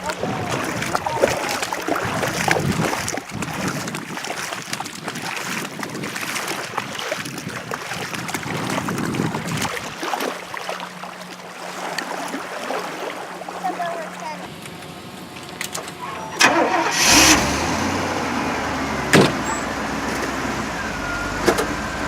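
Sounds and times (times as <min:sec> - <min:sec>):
wind buffeting microphone: 0:00.0 - 0:10.1
lake water splashing and lapping: 0:00.0 - 0:22.0.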